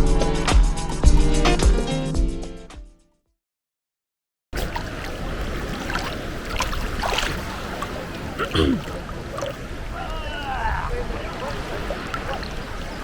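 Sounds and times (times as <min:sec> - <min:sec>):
wind: 0:04.5 - 0:13.0
surf: 0:04.6 - 0:13.0.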